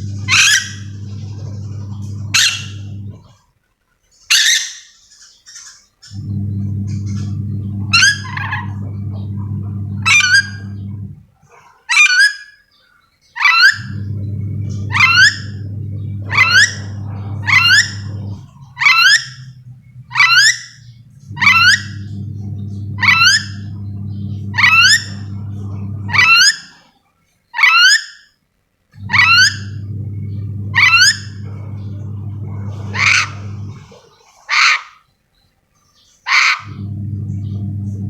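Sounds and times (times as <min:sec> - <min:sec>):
steady low hum: 0:00.0 - 0:03.4, 0:06.0 - 0:11.6, 0:13.8 - 0:26.8, 0:28.9 - 0:34.3, 0:36.6 - 0:38.0
parrot shrill calls: 0:27.6 - 0:28.3.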